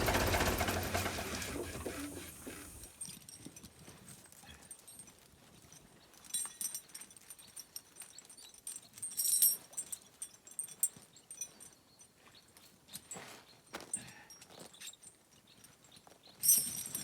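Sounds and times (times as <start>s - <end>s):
light metallic jingling: 0.0s - 2.9s.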